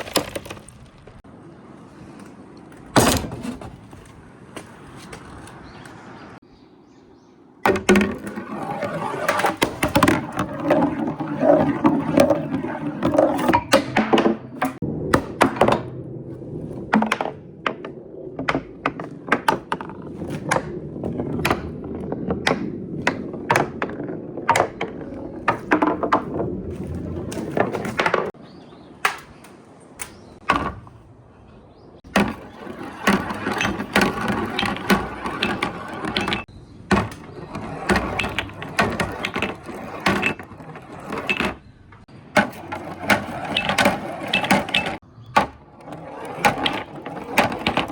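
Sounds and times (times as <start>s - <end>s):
marbles rolling down wooden run: 7.9s - 13.9s.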